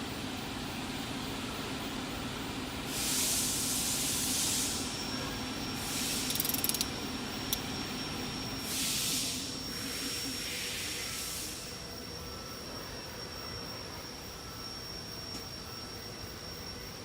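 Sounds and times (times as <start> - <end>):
ratchet pawl clicking: 6.0 - 6.9.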